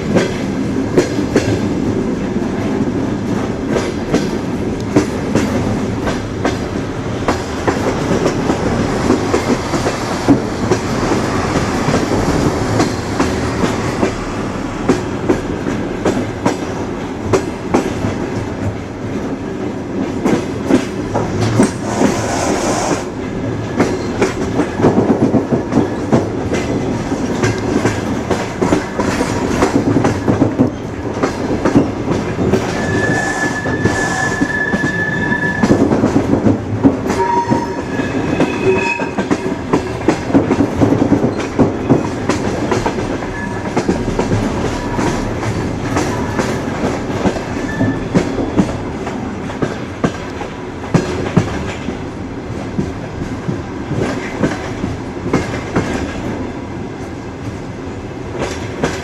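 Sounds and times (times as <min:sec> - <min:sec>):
train rumbling along track: 0:00.0 - 0:59.0.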